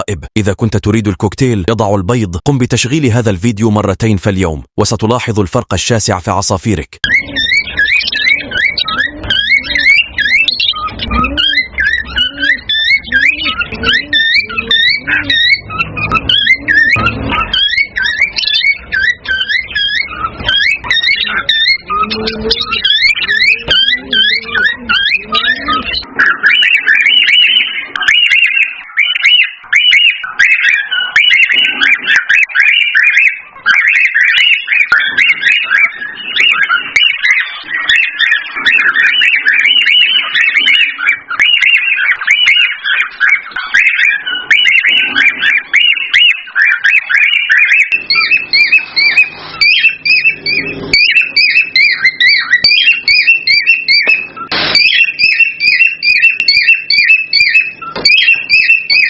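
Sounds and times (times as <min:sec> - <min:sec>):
cockatiels chirping and whistling: 0:07.0 - 0:59.0
higher quick repeated chirps: 0:47.7 - 0:59.0.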